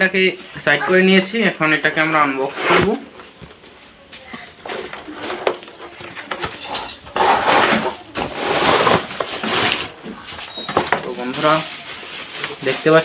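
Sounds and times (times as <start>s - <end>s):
packaging rustling and crinkling: 3.1s - 13.0s.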